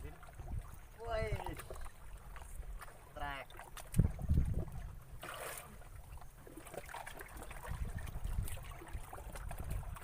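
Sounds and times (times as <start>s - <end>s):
water lapping and trickling: 0.0s - 10.0s
wind rumble on microphone: 3.8s - 5.2s, 7.4s - 10.0s.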